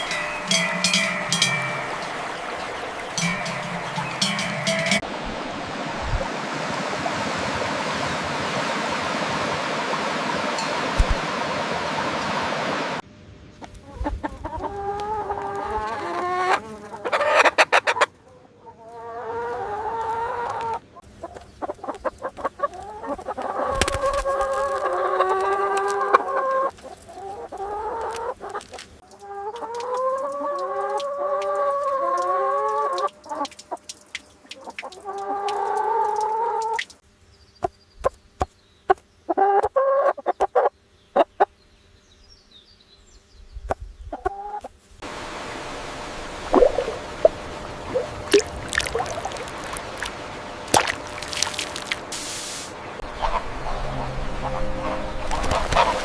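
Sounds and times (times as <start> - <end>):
chickens calling: 0.0 - 5.1, 13.6 - 37.0, 37.6 - 41.6, 43.7 - 56.0.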